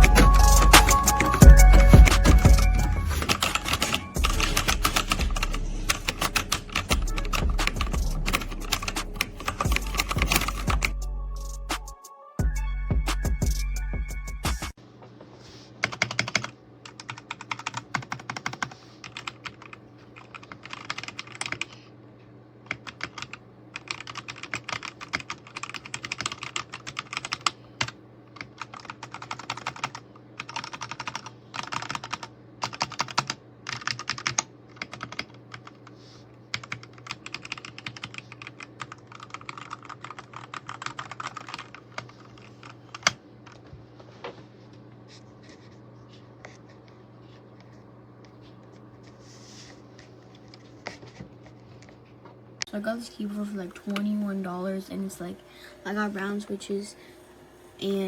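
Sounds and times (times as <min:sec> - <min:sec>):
mechanical keyboard typing: 0:00.0 - 0:11.0, 0:15.8 - 0:21.8, 0:22.7 - 0:35.8, 0:36.5 - 0:43.6.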